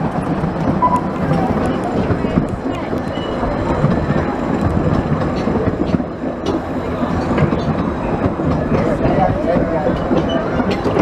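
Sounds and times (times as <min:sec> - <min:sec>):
steam train rumbling: 0:00.0 - 0:11.0
wheels clicking on track: 0:00.0 - 0:11.0.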